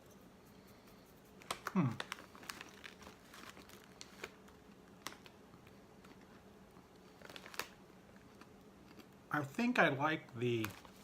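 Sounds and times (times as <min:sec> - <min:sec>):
chewing crunchy chips: 0:01.5 - 0:09.3.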